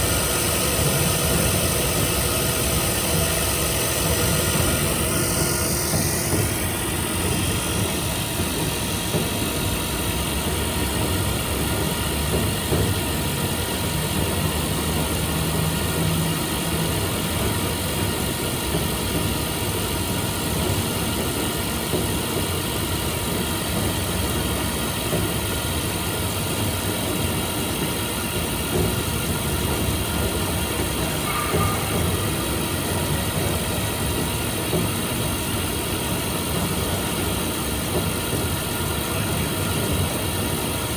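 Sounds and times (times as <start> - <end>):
milling machine low drone: 30.6 - 34.8.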